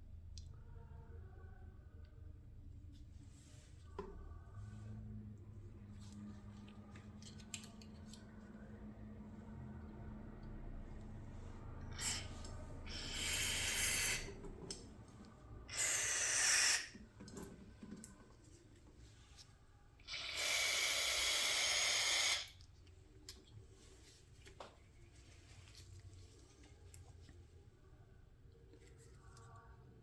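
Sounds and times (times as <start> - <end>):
pressurised spray hissing: 12.0 - 14.4, 15.7 - 16.9, 20.1 - 22.5.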